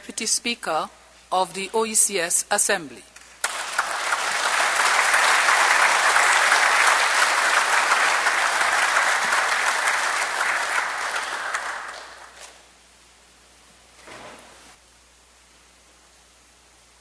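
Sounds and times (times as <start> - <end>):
people clapping: 3.2 - 12.7.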